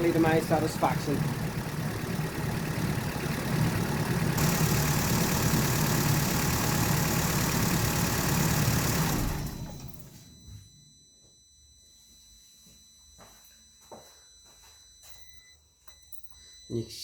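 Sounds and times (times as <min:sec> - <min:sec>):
car engine idling: 0:00.0 - 0:10.1.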